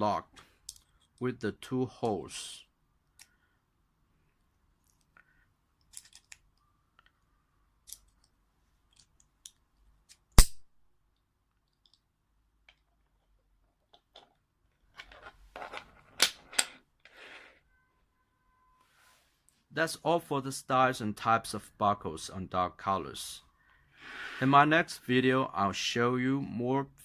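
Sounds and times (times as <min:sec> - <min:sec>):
buckle rattling: 0:05.8 - 0:06.6.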